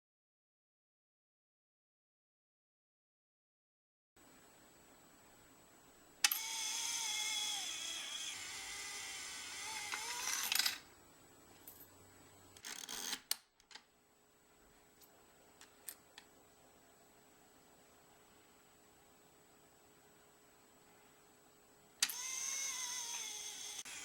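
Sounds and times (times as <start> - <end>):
pitched mechanical whirring: 6.2 - 10.8, 22.0 - 24.0.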